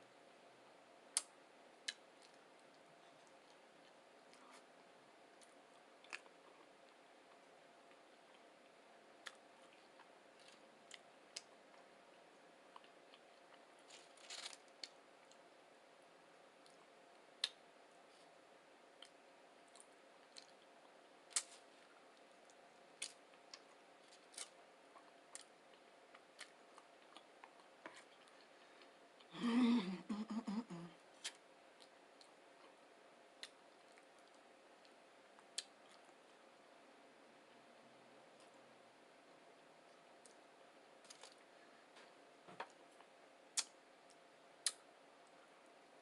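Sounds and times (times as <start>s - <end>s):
person chewing food: 5.4s - 11.9s, 12.7s - 15.4s, 19.0s - 29.3s, 33.4s - 36.3s.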